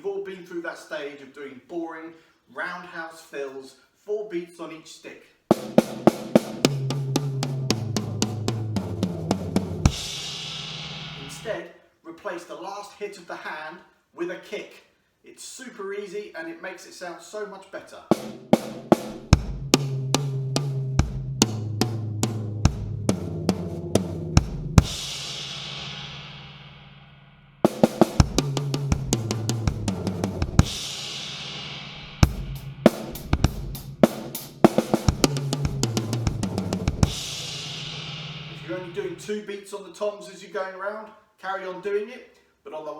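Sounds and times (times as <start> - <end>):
drum kit beats and tom fills: 5.5 - 11.6, 18.1 - 27.0, 27.6 - 39.3
bass drum kick: 5.7 - 11.5, 18.2 - 26.3, 27.7 - 39.2.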